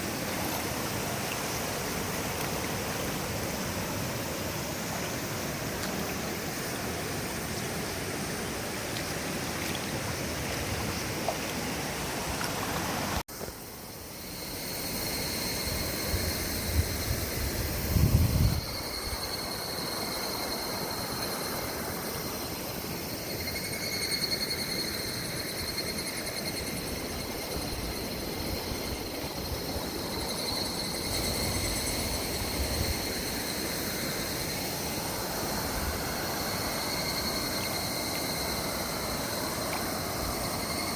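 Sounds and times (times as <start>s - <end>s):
river water rushing over rocks: 0.0s - 13.2s
steady high-pitched whine: 13.0s - 40.9s.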